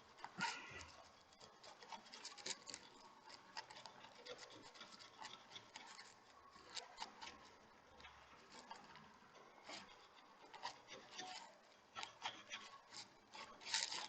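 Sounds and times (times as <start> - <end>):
hand tool scratching and clicking: 9.6 - 14.0.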